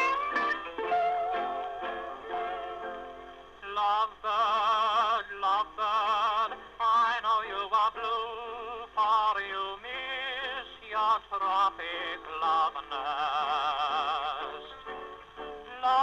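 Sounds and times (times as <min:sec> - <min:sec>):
held instrumental note: 0:00.0 - 0:03.4.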